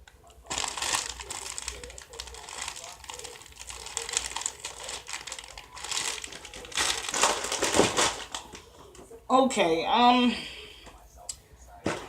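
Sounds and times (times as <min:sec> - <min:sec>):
plastic packaging crinkling: 0:00.4 - 0:09.0.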